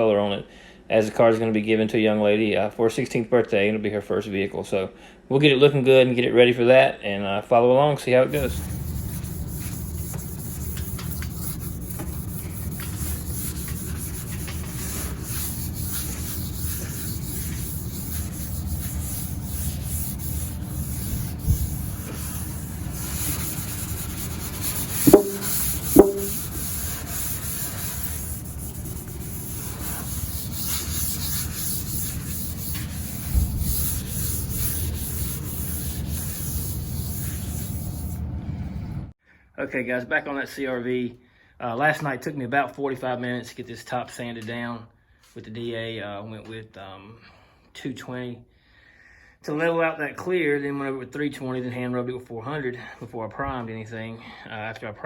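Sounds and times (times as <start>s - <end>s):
orbital sander running: 8.4s - 33.2s
sharp knocks: 25.0s - 26.4s.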